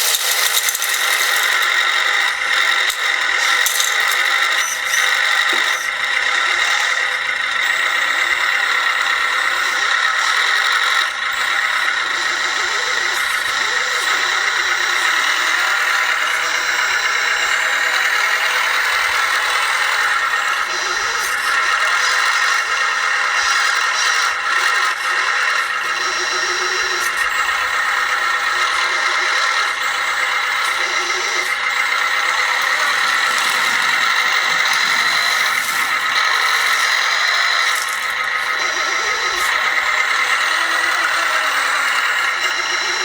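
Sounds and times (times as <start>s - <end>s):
rattling and scraping of parts: 0.0s - 6.0s, 32.2s - 38.6s
small electric motors whining: 0.0s - 43.0s.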